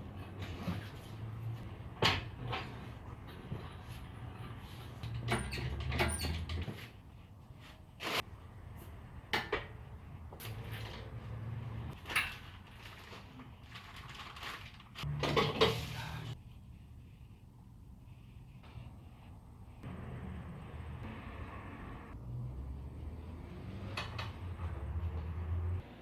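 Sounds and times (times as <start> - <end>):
metal tools knocking and clanking: 5.0 - 6.9.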